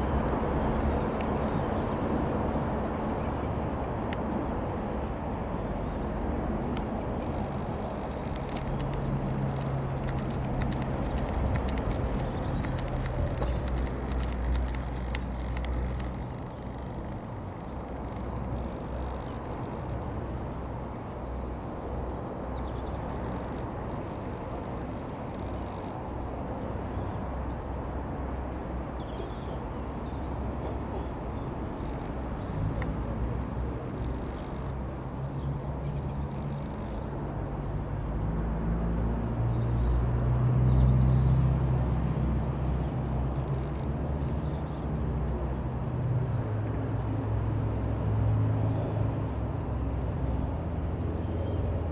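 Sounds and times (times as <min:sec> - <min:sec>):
light aircraft engine drone: 0:00.0 - 0:51.9
steady outdoor rumble: 0:00.0 - 0:51.9
small birds chirping: 0:05.3 - 0:20.0.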